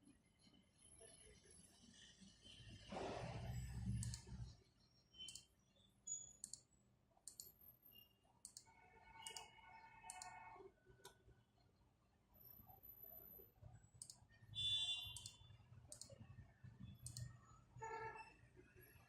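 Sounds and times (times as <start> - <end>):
faint sharp clicks: 8.4 - 9.5, 10.1 - 10.4, 17.0 - 17.3.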